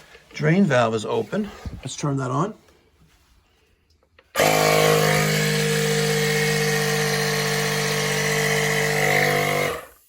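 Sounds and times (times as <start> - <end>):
small air compressor running: 4.4 - 10.0.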